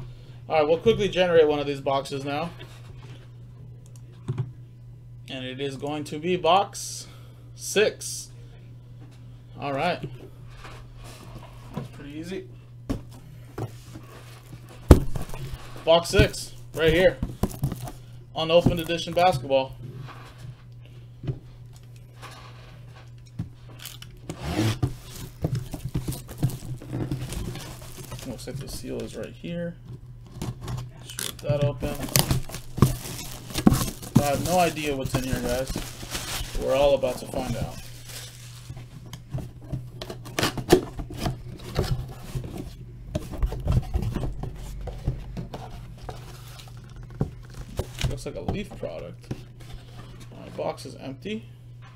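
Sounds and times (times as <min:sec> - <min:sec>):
steady low hum: 0:00.0 - 0:51.9
cardboard rubbing and scraping: 0:24.3 - 0:28.5, 0:31.8 - 0:38.9.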